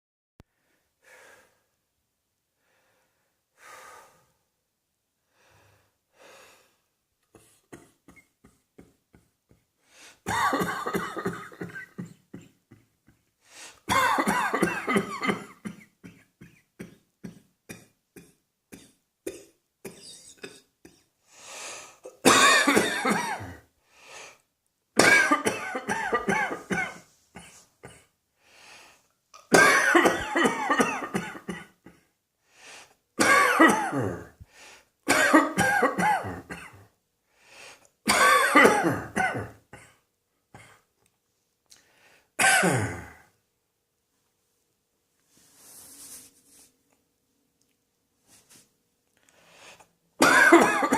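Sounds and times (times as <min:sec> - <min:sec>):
person coughing: 0:10.2 - 0:13.2, 0:13.8 - 0:21.1, 0:22.0 - 0:23.7, 0:25.0 - 0:28.1, 0:29.4 - 0:32.1, 0:33.2 - 0:34.4, 0:35.1 - 0:36.9, 0:38.1 - 0:40.0, 0:42.4 - 0:43.3, 0:50.2 - 0:50.9.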